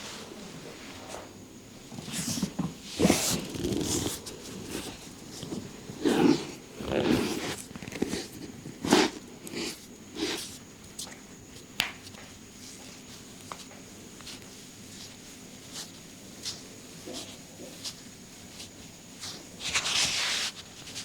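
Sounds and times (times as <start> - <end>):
faint steady hiss: 0.0 - 21.0
hands rubbing skin: 2.0 - 21.0.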